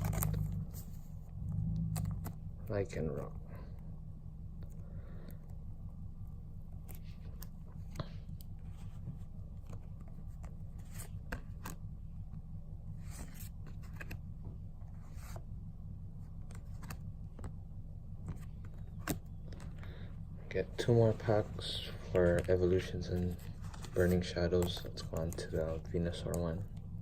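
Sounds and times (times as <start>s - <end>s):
trading cards rustling: 0.0s - 1.2s, 6.7s - 11.9s, 13.0s - 14.3s, 16.3s - 17.6s, 18.2s - 26.8s
steady low hum: 0.0s - 27.0s.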